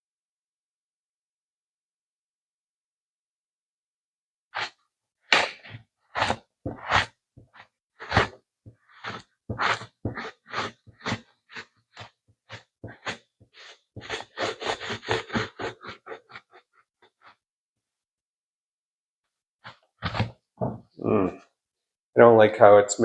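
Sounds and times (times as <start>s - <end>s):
foam brush scrubbing on wood: 8.9s - 11.7s, 12.5s - 16.4s.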